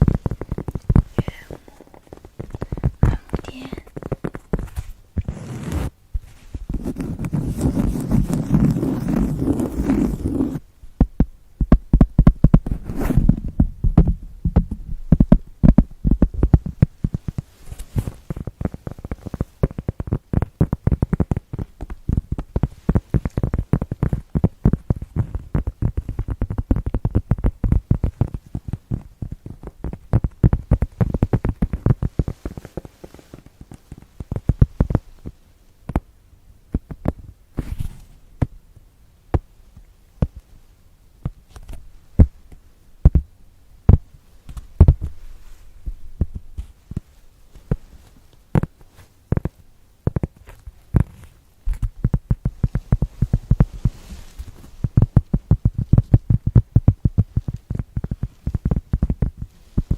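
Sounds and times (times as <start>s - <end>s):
dull tapping: 0.0s - 5.3s, 13.6s - 36.1s.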